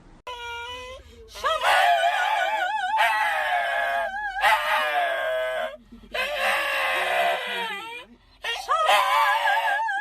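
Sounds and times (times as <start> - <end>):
dog howling: 1.5 - 7.9, 8.8 - 10.0.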